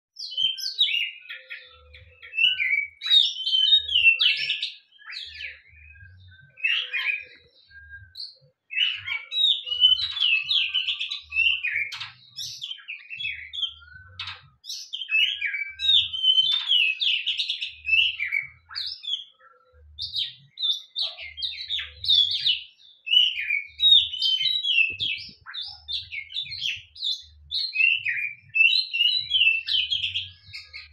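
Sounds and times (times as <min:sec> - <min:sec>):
bird singing chirps and whistles: 0:00.2 - 0:30.9.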